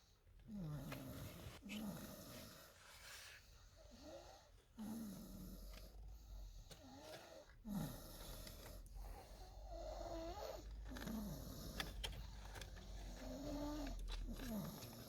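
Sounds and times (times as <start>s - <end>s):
baby snoring: 9.0s - 12.0s, 12.8s - 15.0s.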